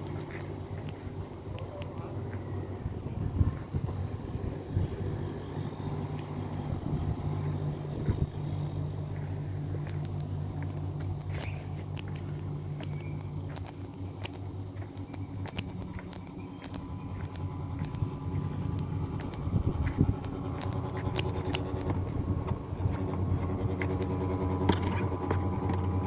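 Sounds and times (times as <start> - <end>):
air conditioner humming: 0.0 - 26.0
light clicks and taps: 9.8 - 18.0.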